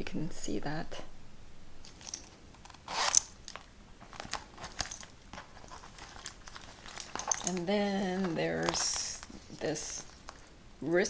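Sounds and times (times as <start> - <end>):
canvas pouches rustling and clicking: 1.9 - 10.5.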